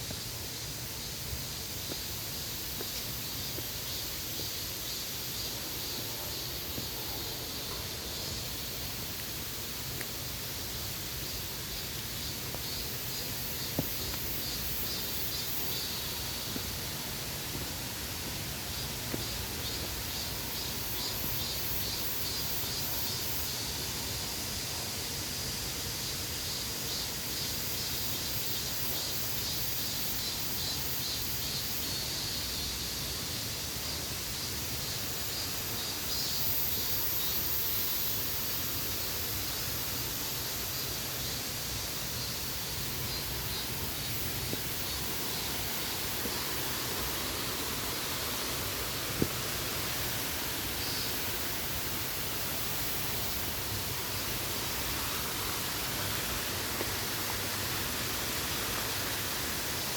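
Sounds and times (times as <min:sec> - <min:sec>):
steady hiss: 0:00.0 - 0:59.9.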